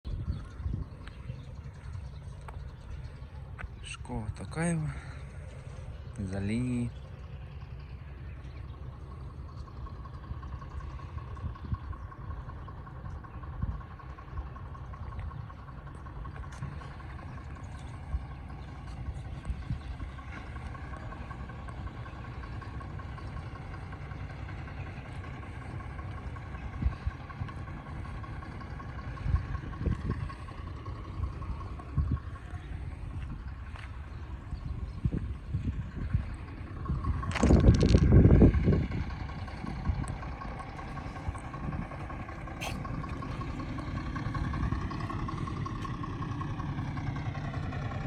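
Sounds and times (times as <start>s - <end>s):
engine running with whine: 0.0s - 48.0s
wind gusting against microphone: 34.6s - 40.4s.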